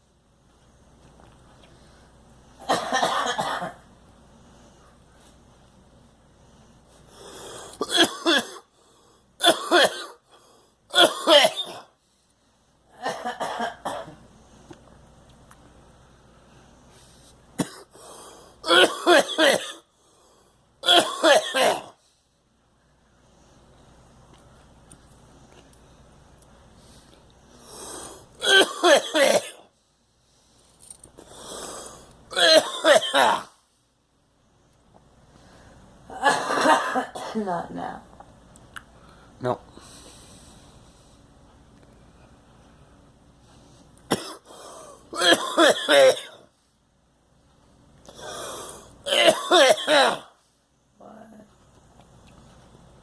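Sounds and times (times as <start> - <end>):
person coughing hard: 2.6 - 3.8, 7.8 - 8.7, 9.4 - 10.2, 10.9 - 12.0, 12.9 - 14.2, 17.6 - 18.0, 18.6 - 19.9, 20.8 - 22.0, 28.4 - 29.7, 32.3 - 33.6, 36.1 - 37.5, 44.1 - 46.5, 49.0 - 50.4
noisy in-breath: 6.3 - 7.8, 8.6 - 9.4, 10.2 - 10.9, 16.1 - 18.6, 19.8 - 20.8, 25.9 - 28.4, 29.6 - 32.3, 35.2 - 36.0, 38.9 - 41.4, 42.0 - 45.2, 48.0 - 49.1.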